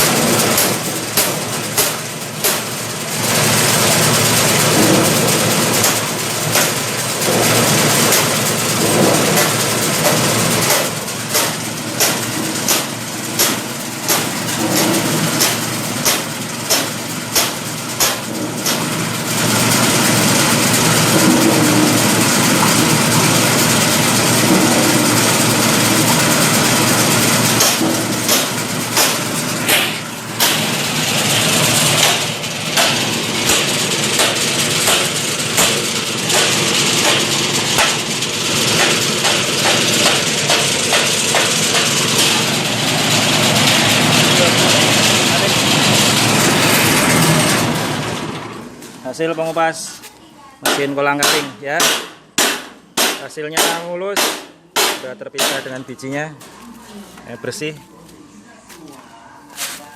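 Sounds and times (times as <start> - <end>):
sharp knocks inside machine: 0.0 - 2.8, 4.6 - 19.0, 21.1 - 42.5, 50.6 - 55.8
peeling machine motor running: 0.0 - 48.9.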